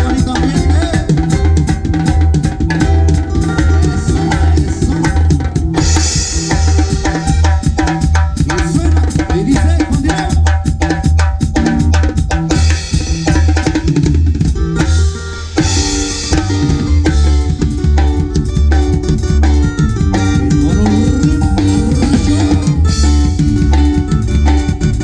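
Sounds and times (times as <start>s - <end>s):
band music: 0.0s - 25.0s.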